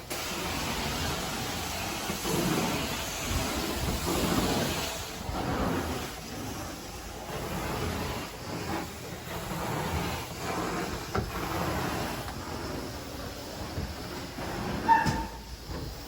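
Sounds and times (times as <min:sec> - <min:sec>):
carpet cleaning machine hissing: 0:00.0 - 0:16.0.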